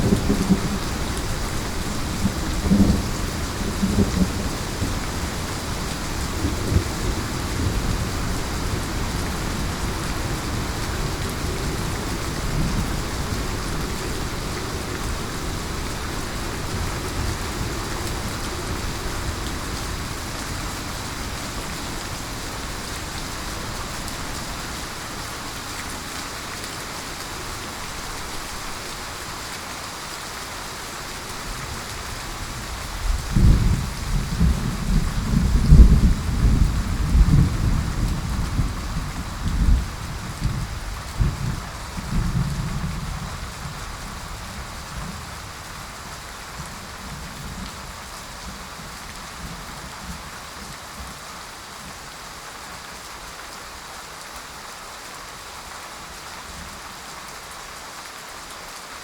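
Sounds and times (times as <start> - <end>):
low rolling thunder: 0.0 - 24.9, 31.6 - 45.4
heavy rain falling: 0.0 - 59.0.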